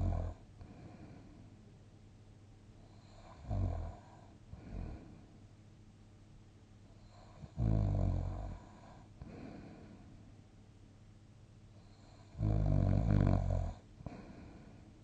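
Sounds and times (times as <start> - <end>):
person snoring: 0.0 - 1.0, 2.9 - 5.2, 7.0 - 10.0, 11.9 - 14.8
quiet sleep breathing: 0.0 - 1.7, 2.7 - 5.6, 6.8 - 10.4, 11.7 - 15.0.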